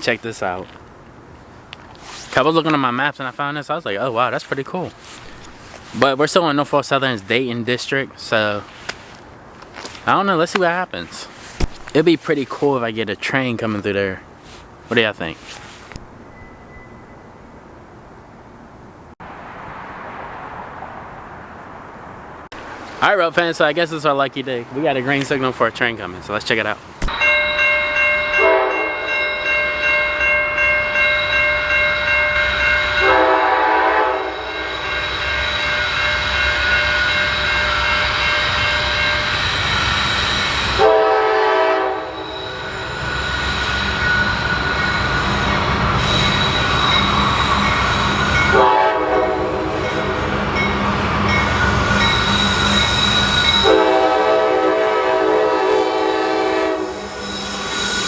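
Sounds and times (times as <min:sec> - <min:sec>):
train rumbling: 0:27.0 - 0:58.0
locomotive horn blasts: 0:27.1 - 0:39.7, 0:40.5 - 0:43.1, 0:43.8 - 0:57.4.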